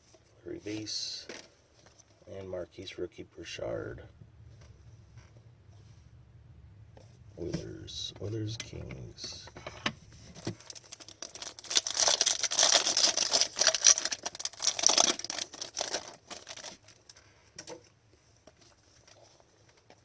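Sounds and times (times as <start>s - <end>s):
foil wrapper tearing and crinkling: 10.4s - 17.2s.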